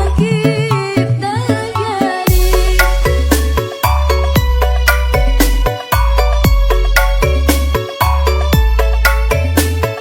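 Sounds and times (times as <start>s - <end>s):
deep bass notes: 0.0s - 9.8s
wavering melody: 0.0s - 10.0s
drum hits: 2.3s - 4.6s.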